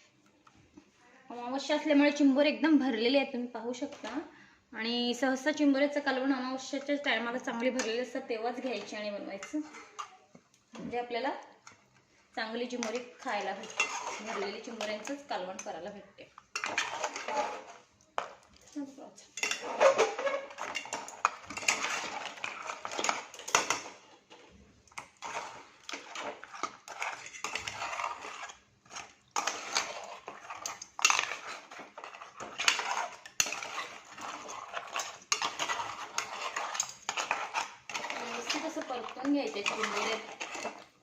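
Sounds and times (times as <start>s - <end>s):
metal spatula scraping a pan: 6.1s - 10.3s, 12.5s - 41.0s.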